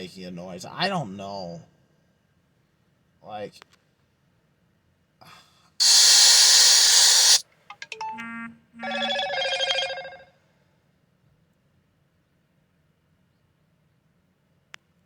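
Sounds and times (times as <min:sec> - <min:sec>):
burst of hiss: 0:05.8 - 0:07.4
electronic chime tones: 0:07.8 - 0:10.2.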